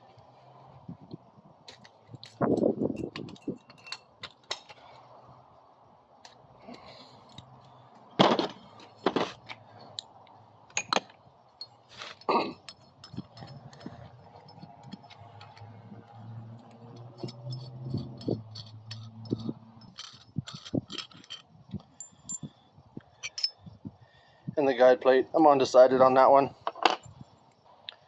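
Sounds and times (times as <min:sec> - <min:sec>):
hand tools clinking on workbench: 0:16.9 - 0:22.5.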